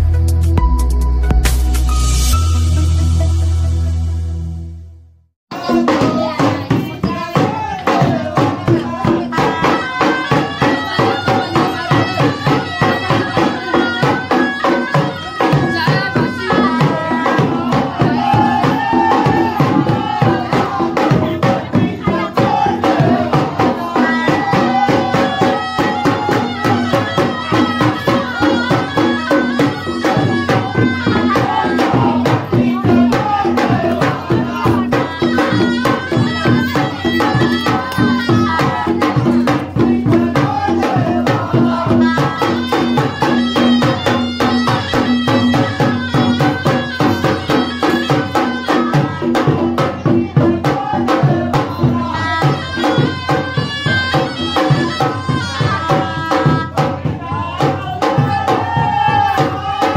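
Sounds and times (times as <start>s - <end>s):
fast drumming: 5.5s - 59.9s.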